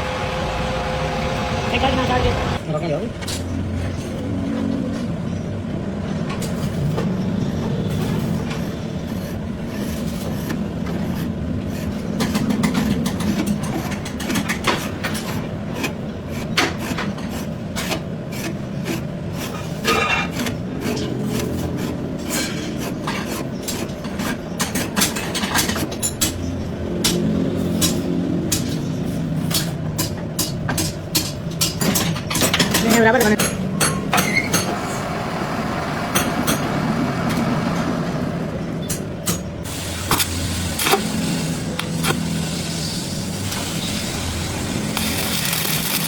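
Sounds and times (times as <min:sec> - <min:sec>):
machine humming low: 0:00.0 - 0:02.6
metal knocking and scraping: 0:06.2 - 0:35.0.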